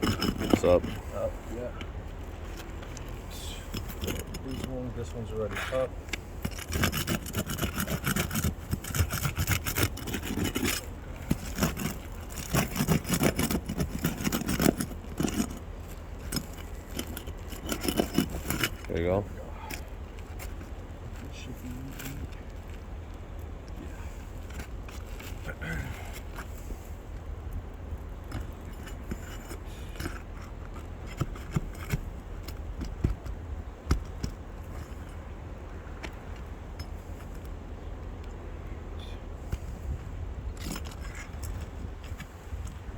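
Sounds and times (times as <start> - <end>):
roof shingles scraping: 0.0 - 23.1.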